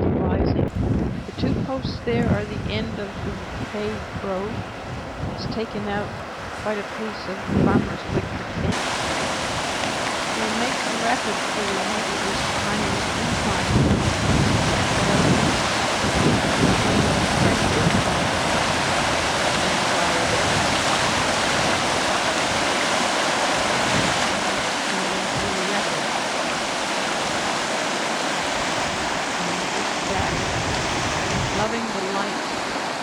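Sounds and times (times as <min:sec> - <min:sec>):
river rushing through rapids: 0:08.7 - 0:33.0.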